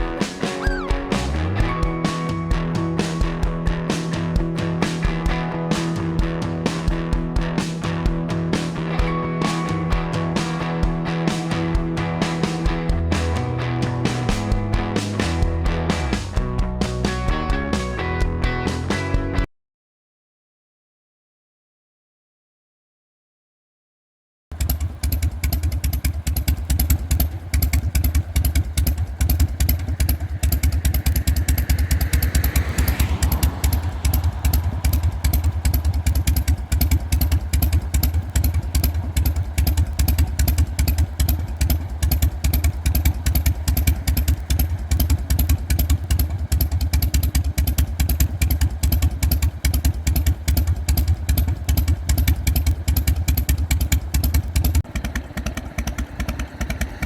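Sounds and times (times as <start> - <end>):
motorcycle engine idling: 24.6 - 57.0.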